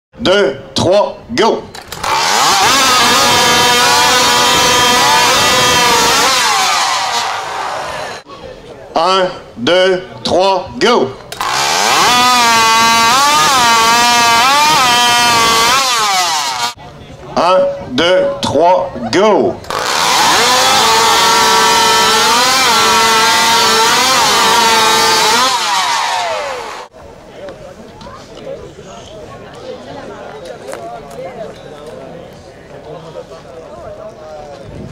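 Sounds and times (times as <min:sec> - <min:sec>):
chainsaw screaming at full throttle: 0:01.9 - 0:08.3, 0:11.3 - 0:16.8, 0:19.7 - 0:26.9.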